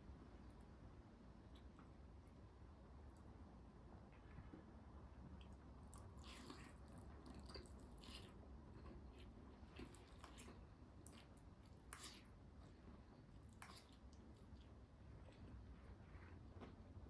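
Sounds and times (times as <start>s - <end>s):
person chewing crunchy food: 5.4s - 15.6s.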